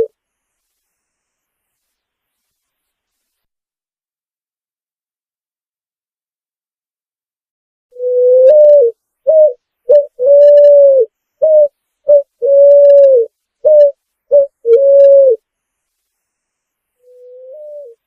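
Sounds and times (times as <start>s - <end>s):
pigeon cooing: 8.0s - 15.4s, 17.1s - 18.0s.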